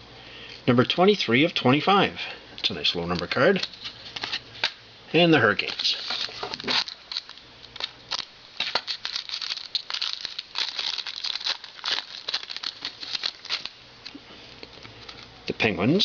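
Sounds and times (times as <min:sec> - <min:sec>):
wrapper crinkling and tearing: 0:05.6 - 0:15.3.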